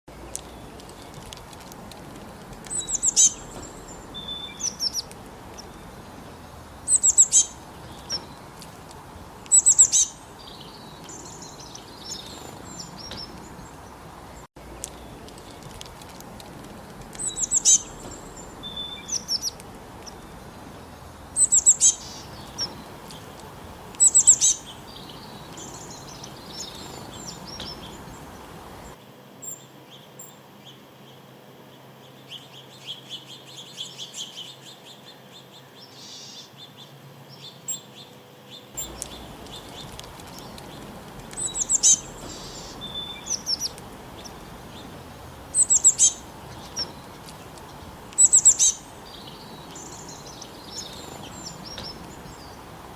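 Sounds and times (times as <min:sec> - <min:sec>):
small birds chirping: 0:00.1 - 0:30.8, 0:32.0 - 0:52.9
steady background hiss: 0:00.1 - 0:52.9
bird trilling: 0:02.7 - 0:05.8, 0:06.9 - 0:08.2, 0:17.2 - 0:20.2, 0:21.4 - 0:29.0, 0:38.8 - 0:52.9.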